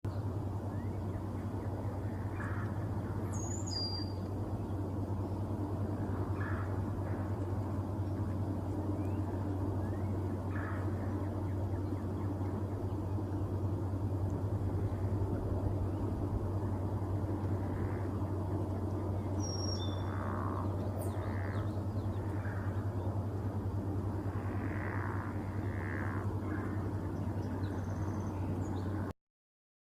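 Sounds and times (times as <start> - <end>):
constant hum: 0.1 - 29.1
low rumble: 0.1 - 29.1
bird whistles and chirps: 3.4 - 4.1.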